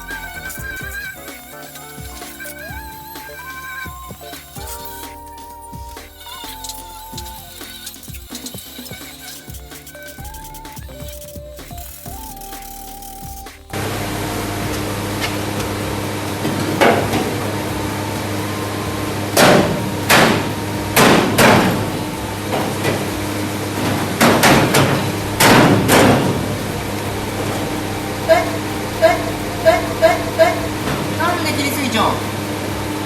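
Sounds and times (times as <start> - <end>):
machine hum: 0.0 - 33.0
hammer striking sheet metal: 14.6 - 17.6, 19.4 - 27.7.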